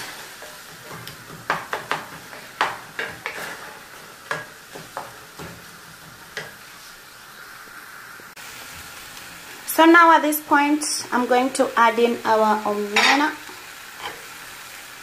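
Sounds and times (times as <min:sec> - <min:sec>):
utensil scraping a pan: 0:00.0 - 0:07.0
sauce sizzling: 0:00.0 - 0:15.0.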